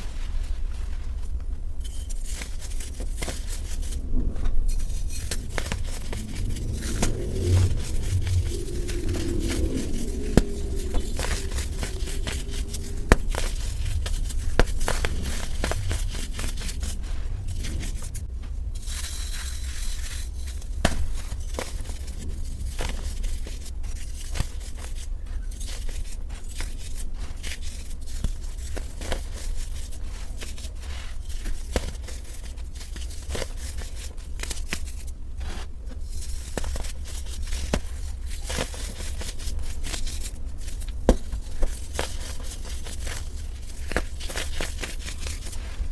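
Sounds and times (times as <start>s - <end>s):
constant low hum: 0.0s - 45.9s
baking soda crunching: 5.2s - 18.2s.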